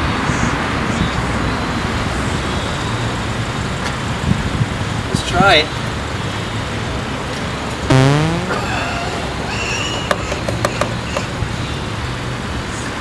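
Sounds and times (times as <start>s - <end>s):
buzzy synthesized fart sound: 7.9s - 8.7s.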